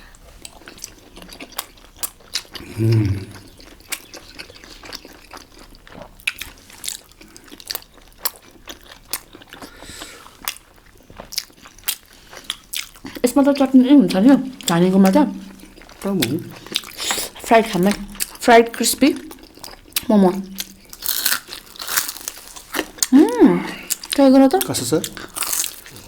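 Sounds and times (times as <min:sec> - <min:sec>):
wet chewing clicks and smacks: 0:03.3 - 0:09.7, 0:10.4 - 0:13.3, 0:14.7 - 0:18.4, 0:19.1 - 0:23.2.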